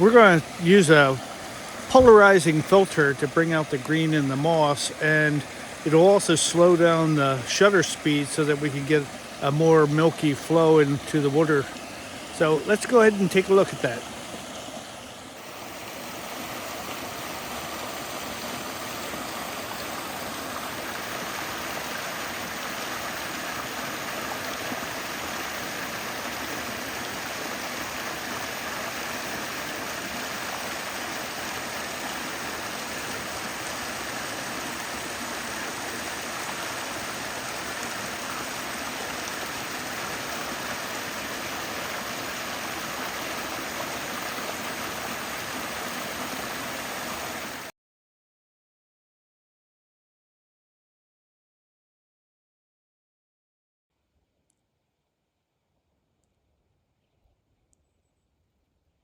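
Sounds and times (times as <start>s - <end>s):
waterfall rushing over rocks: 0.0s - 47.7s.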